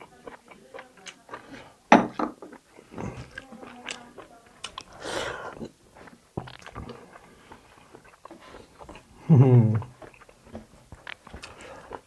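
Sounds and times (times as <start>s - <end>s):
person chewing and biting: 2.5s - 12.0s.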